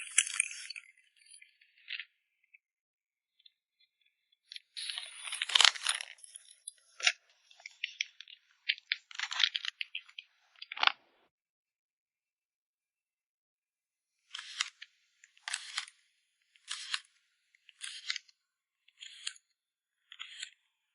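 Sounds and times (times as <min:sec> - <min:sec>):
plastic sleeves crinkling: 0:04.8 - 0:11.0.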